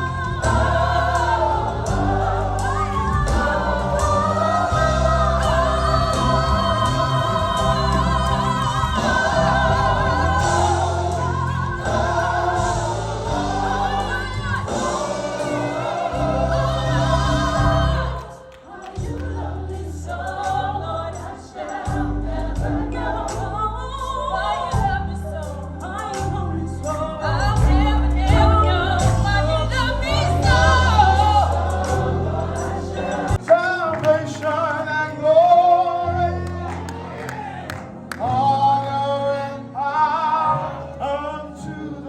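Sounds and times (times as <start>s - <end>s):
low bass notes: 0.0s - 18.2s, 21.9s - 33.4s
gospel choir singing: 0.0s - 42.0s.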